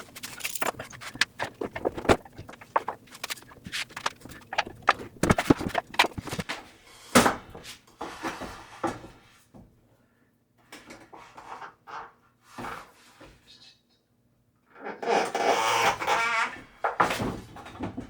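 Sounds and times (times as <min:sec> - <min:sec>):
objects knocking and clattering: 0:00.0 - 0:06.6.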